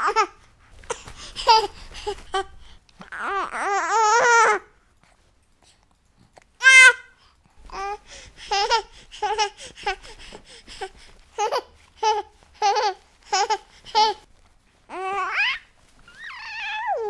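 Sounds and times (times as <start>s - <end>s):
baby laughing: 8.4s - 10.1s, 11.4s - 14.2s.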